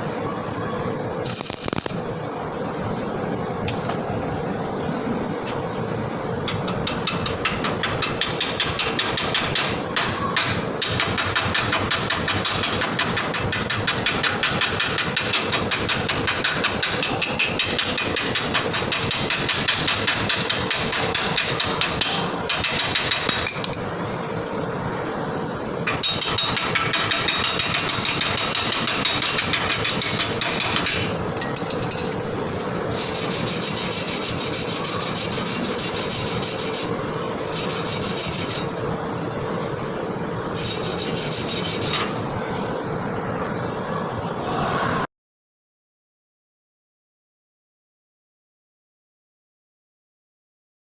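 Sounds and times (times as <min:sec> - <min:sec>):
welding arc crackling: 0:01.3 - 0:02.2.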